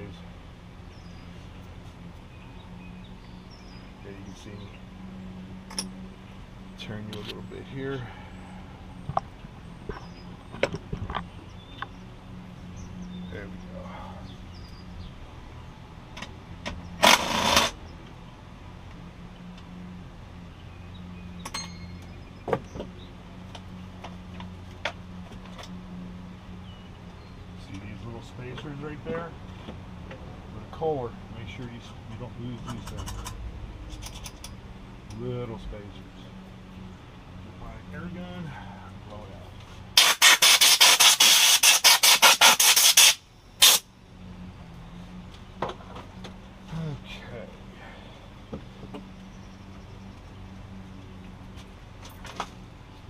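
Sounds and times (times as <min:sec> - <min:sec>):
low hum: 0:00.0 - 0:39.9
tools and engine parts clinking: 0:05.6 - 0:06.0, 0:21.4 - 0:22.9, 0:32.1 - 0:35.2
compressed air blow gun blasts: 0:40.0 - 0:43.9.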